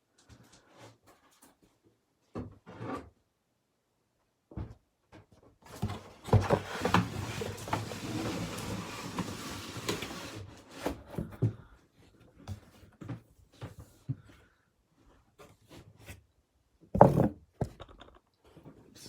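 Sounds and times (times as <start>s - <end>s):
cardboard rustling and scraping: 5.7s - 11.6s, 17.0s - 17.8s.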